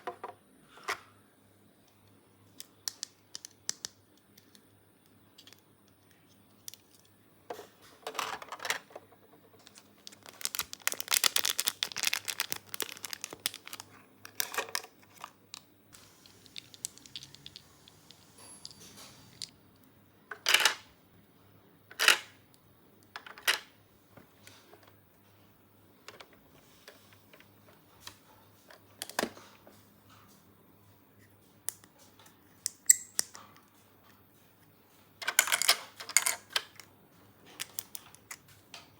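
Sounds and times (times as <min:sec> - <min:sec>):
packaging rustling: 0:09.6 - 0:18.2
plastic toy pieces clicking: 0:16.4 - 0:18.8.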